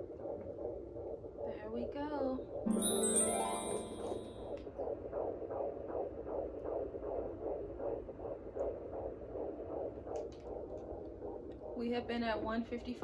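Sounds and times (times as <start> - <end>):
fetal heartbeat through doppler speaker: 0.0 - 1.6, 5.6 - 12.6.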